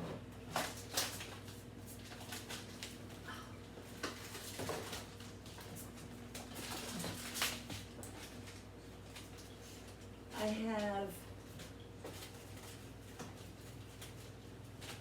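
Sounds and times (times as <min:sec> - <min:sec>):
refrigerator hum: 0:00.0 - 0:15.0.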